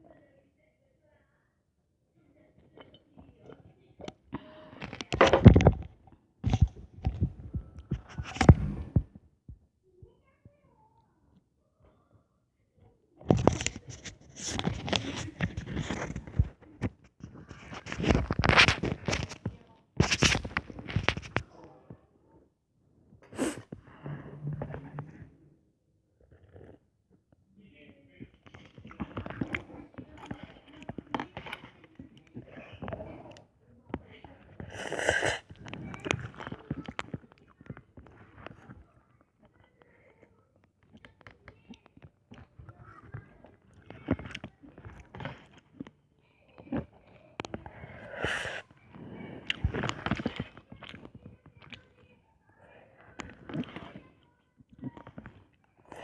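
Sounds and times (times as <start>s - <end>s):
noodles being slurped: 28.4s - 33.5s, 34.2s - 52.0s, 52.6s - 56.0s.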